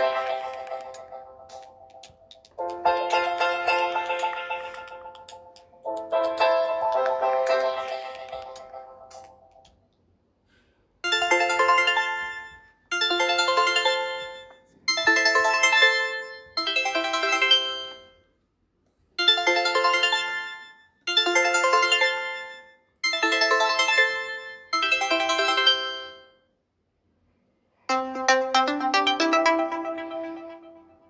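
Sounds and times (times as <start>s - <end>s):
chiming phone ringtone: 0.0s - 2.0s, 2.6s - 9.7s, 11.0s - 18.3s, 19.2s - 26.5s, 27.9s - 31.0s.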